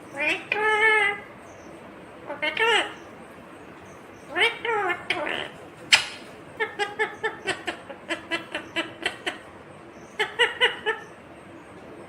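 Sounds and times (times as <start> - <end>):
parrot chattering: 0.0 - 1.4, 2.2 - 3.2, 4.2 - 9.5, 10.1 - 11.2.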